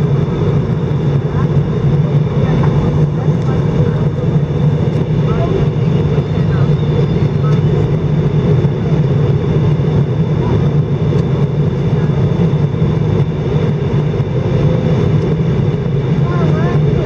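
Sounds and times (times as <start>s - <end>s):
engine and airflow drone: 0.0s - 17.0s
strong low hum: 0.0s - 17.0s.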